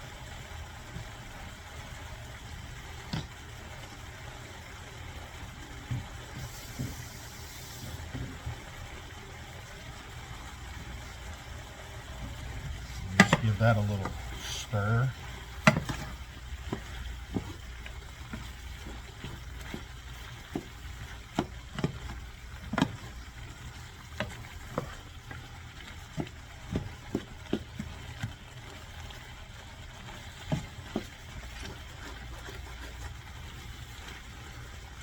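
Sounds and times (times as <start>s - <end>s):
food sizzling in pan: 4.3s - 9.3s
utensil knocking against pan: 13.1s - 14.6s, 15.6s - 16.1s.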